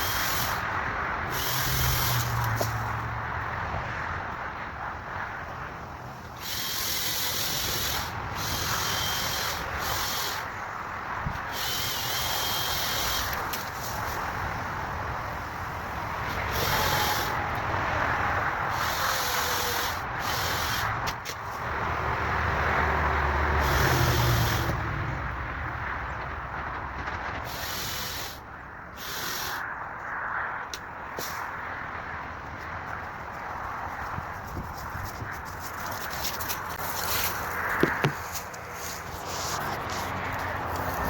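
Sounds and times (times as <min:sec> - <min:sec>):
chainsaw motor whine: 0:01.3 - 0:02.6.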